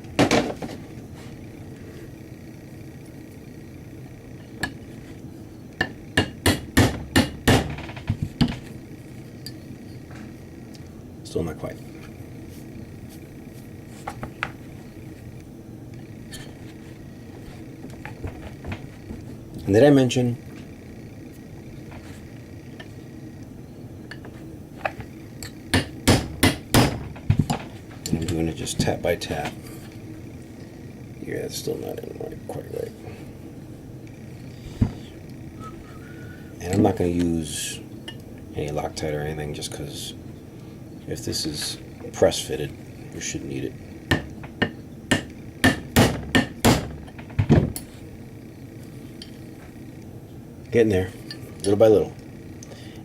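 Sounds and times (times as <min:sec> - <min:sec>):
hammer tapping a metal punch: 0:05.8 - 0:07.8, 0:44.1 - 0:47.0
hammer tapping metal punch: 0:05.8 - 0:08.7, 0:25.4 - 0:29.0, 0:44.1 - 0:47.9.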